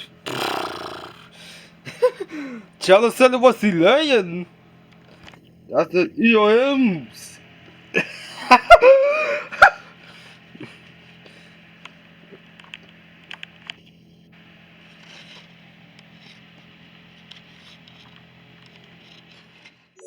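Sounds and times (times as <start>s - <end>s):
radio static hiss and hum: 2.8s - 8.5s, 9.5s - 20.0s
small clicks and scrapes: 11.8s - 19.9s.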